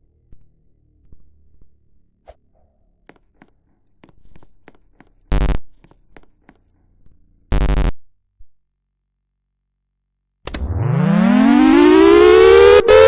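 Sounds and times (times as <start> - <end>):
loud buzz: 10.5 - 13.0.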